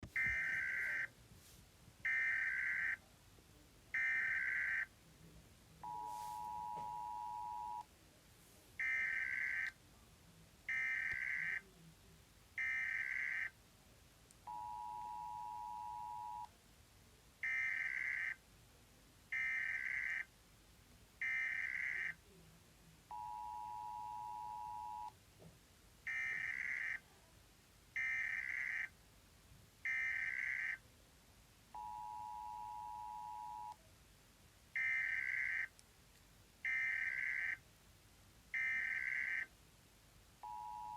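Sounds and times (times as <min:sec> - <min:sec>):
two-tone attention signal: 0:05.8 - 0:07.8, 0:31.8 - 0:33.7.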